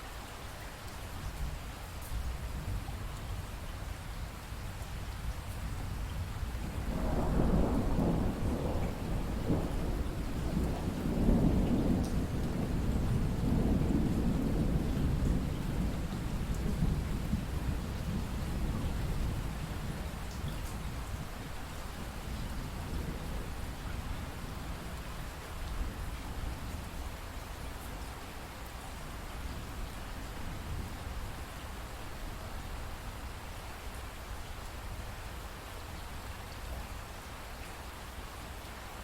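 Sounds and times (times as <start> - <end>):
steady rainfall: 0.0 - 39.0
rolling thunder: 6.4 - 20.2.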